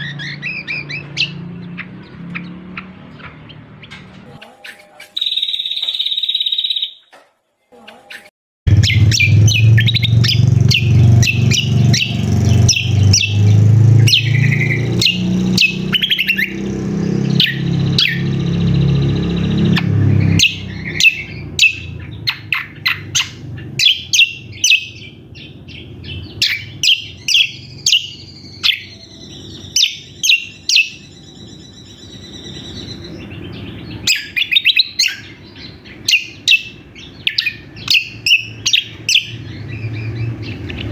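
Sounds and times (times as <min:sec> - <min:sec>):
bird chirps and buzzy trills: 0:00.0 - 0:07.0, 0:08.2 - 0:40.9
loud low hum: 0:08.7 - 0:34.0.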